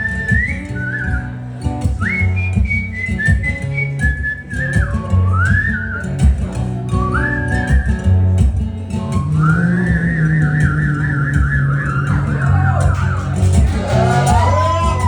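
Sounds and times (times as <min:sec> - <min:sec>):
walking bass line: 0:00.0 - 0:15.0
steady percussion: 0:08.4 - 0:15.0
blues-rock band playing: 0:12.2 - 0:15.0.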